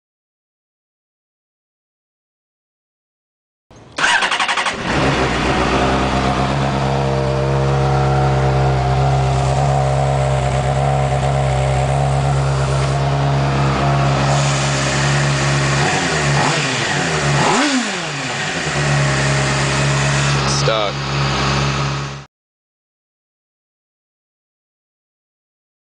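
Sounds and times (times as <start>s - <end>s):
motorcycle engine starting and idling: 3.9s - 22.3s
motorcycle engine revving: 4.0s - 22.3s.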